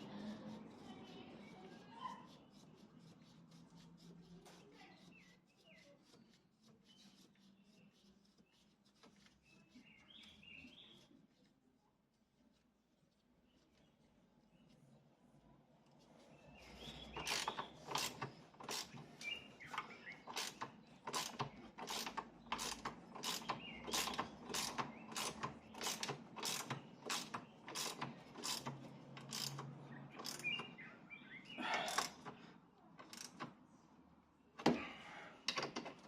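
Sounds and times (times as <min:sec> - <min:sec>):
ratchet wrench clicking: 0:17.2 - 0:19.0, 0:19.7 - 0:30.7, 0:31.9 - 0:32.4, 0:33.0 - 0:33.5.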